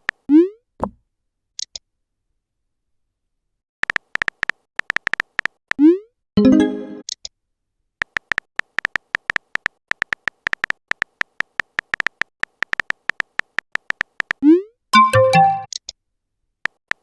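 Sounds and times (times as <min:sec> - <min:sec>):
typing clicks: 0:03.8 - 0:05.6, 0:08.0 - 0:14.4.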